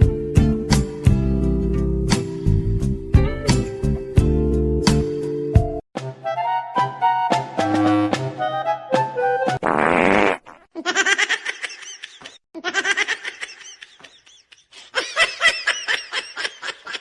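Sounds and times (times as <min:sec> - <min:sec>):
high-pitched laughter: 0:10.8 - 0:17.0.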